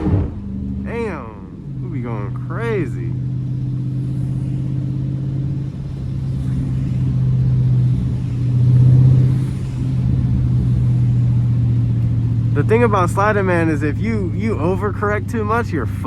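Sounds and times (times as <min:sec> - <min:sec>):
car engine droning: 0:00.0 - 0:16.0.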